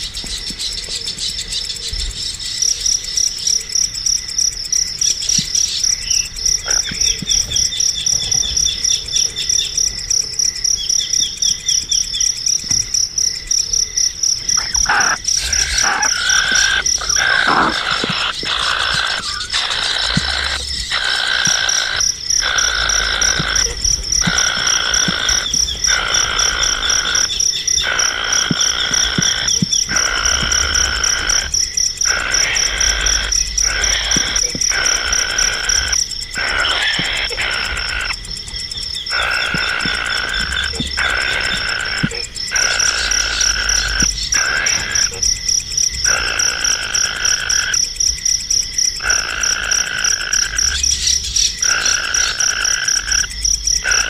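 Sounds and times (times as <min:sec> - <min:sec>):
animal calls: 0:05.9 - 0:09.8, 0:14.1 - 0:47.8, 0:49.0 - 0:54.0.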